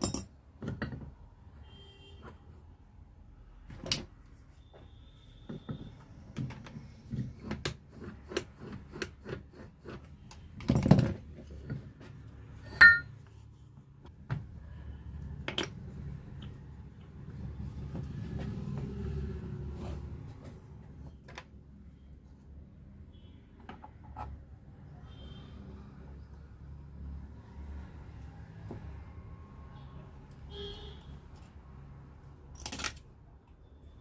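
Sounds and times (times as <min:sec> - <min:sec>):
metal parts clicking and knocking: 0:00.0 - 0:01.1
metallic clink ringing: 0:12.7 - 0:13.2.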